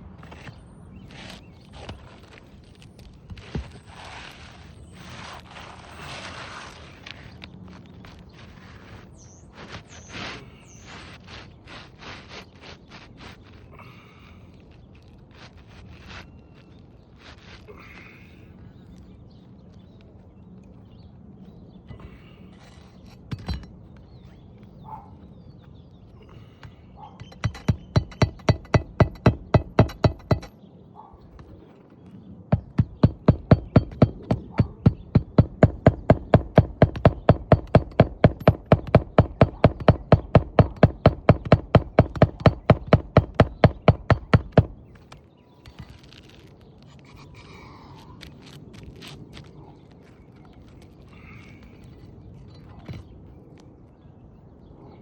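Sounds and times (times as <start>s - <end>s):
hammer striking metal: 27.2s - 30.5s.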